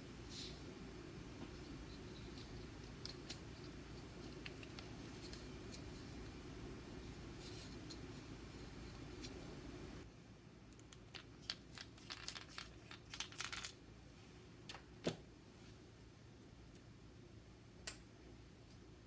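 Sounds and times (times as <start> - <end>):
small parts clicking and rustling: 1.6 - 6.4, 10.7 - 13.8.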